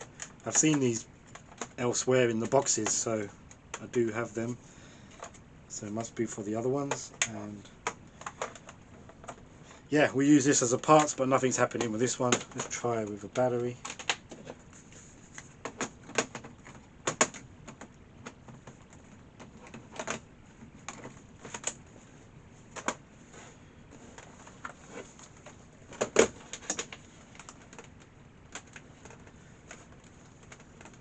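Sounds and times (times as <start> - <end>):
plastic laptop clicks and knocks: 13.3 - 14.6, 15.6 - 21.8, 24.6 - 31.0.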